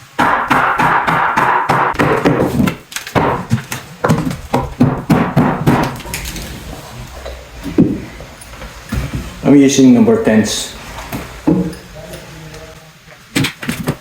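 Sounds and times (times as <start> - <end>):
hammer driving nails into wood: 0.2 - 6.2.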